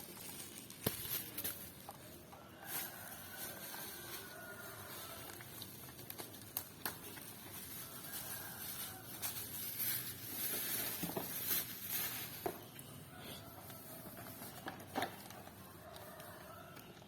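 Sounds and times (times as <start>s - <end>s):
packaging rustling: 0.0s - 12.8s.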